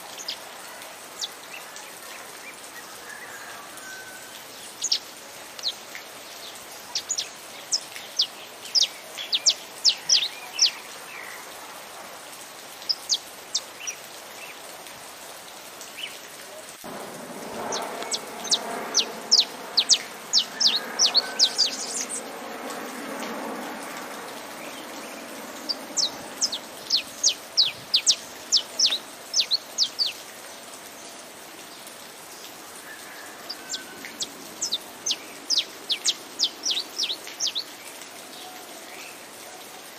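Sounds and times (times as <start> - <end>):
steady rain: 0.0 - 39.9
finch chirping: 17.7 - 22.2, 25.6 - 30.2, 34.2 - 37.6.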